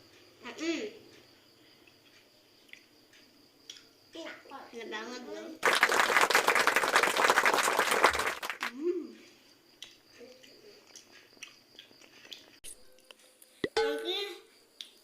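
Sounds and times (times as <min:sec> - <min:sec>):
person chewing: 0:10.8 - 0:12.8.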